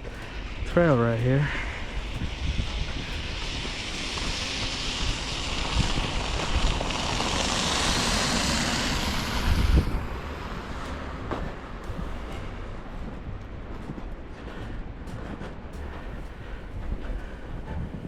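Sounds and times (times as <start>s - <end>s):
vehicle tyres hissing on wet road: 0.0s - 13.7s
wind buffeting microphone: 0.0s - 18.0s.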